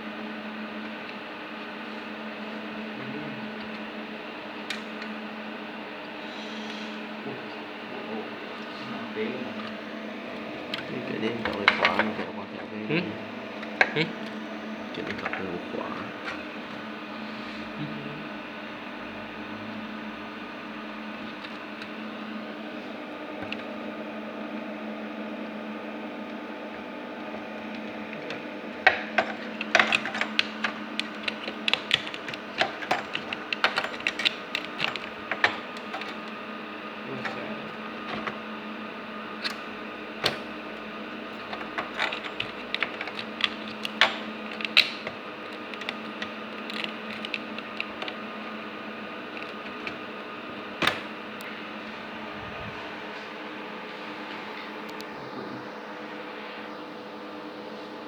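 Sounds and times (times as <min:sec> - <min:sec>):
steady electrical hum: 0:00.0 - 0:58.0
clicks and knocks of handled parts: 0:13.6 - 0:16.8, 0:27.8 - 0:36.4, 0:37.2 - 0:38.4, 0:39.4 - 0:48.6.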